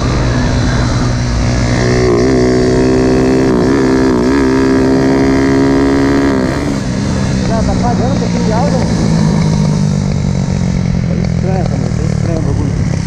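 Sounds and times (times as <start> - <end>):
motorcycle engine revving high: 0.0 - 13.0.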